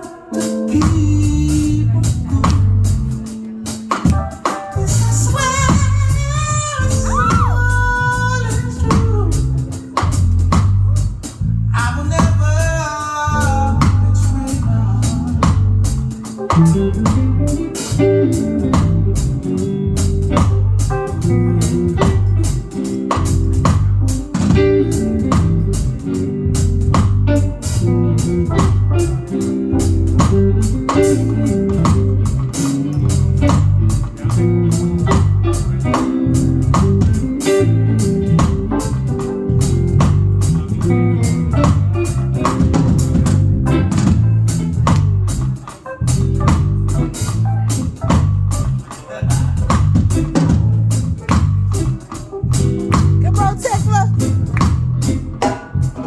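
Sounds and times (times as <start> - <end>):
bass guitar line: 0.0 - 56.0
drum kit: 0.0 - 56.0
electric guitar: 0.0 - 56.0
bending sung phrase: 4.9 - 8.8, 53.2 - 54.4.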